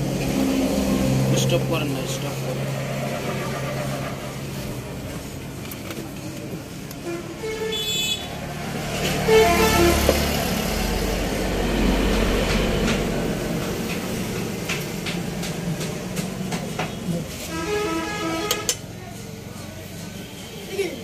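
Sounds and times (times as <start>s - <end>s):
vehicle rumbling past: 0.0s - 5.5s, 8.3s - 18.4s
vehicle horn tooting: 7.0s - 8.4s, 9.2s - 10.3s, 17.4s - 18.8s.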